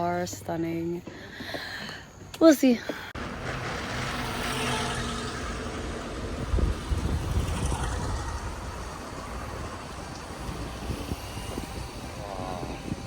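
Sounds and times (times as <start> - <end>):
road noise: 0.0 - 13.0
wind buffeting microphone: 3.2 - 13.0.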